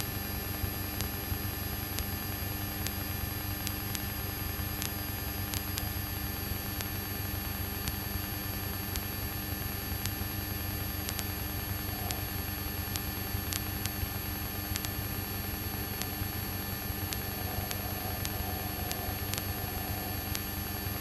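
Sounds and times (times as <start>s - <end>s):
static hiss: 0.0s - 21.0s
faint clicks: 11.0s - 14.0s, 14.7s - 15.0s, 17.0s - 21.0s
aircraft piston engine droning: 16.4s - 21.0s.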